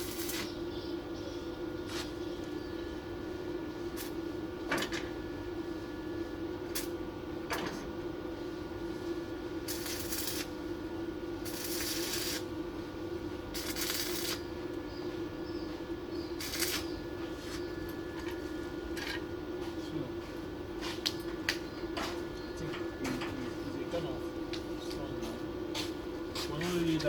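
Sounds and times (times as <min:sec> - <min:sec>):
welding arc hiss: 0:00.0 - 0:00.6, 0:03.9 - 0:04.2, 0:06.7 - 0:07.0, 0:08.9 - 0:10.7, 0:11.4 - 0:12.6, 0:13.3 - 0:14.6, 0:16.2 - 0:18.0
machine hum: 0:02.4 - 0:27.0.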